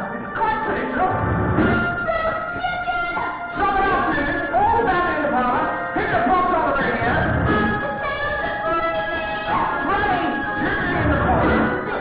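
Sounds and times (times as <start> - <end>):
low bass swell: 1.0 - 1.9
orchestral music with brass: 7.3 - 12.0.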